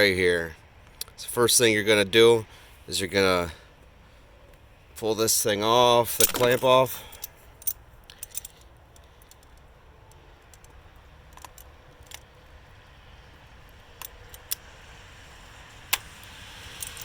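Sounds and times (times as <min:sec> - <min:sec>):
sharp metallic clicks: 0:06.1 - 0:12.3.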